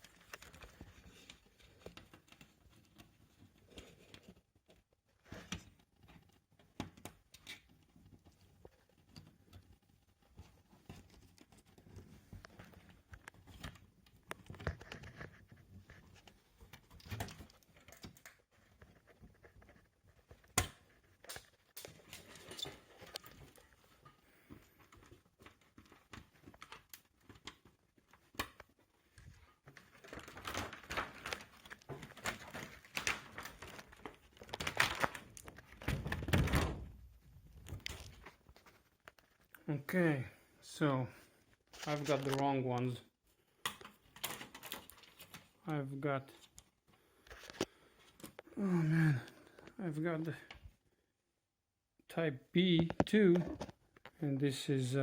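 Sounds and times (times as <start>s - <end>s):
plastic packaging crinkling: 29.2s - 36.6s, 41.6s - 42.6s.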